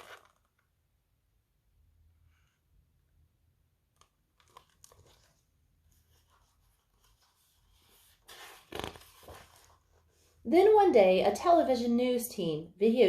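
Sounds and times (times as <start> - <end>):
paper rustling and crinkling: 0.0 - 0.6, 4.0 - 10.1.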